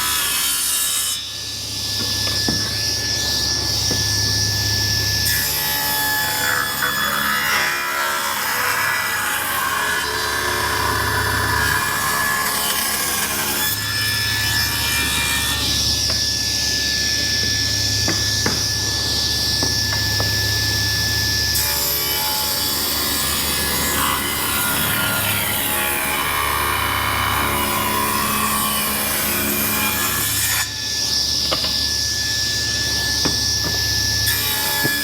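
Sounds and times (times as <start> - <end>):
bandsaw cutting wood: 21.5 - 35.0.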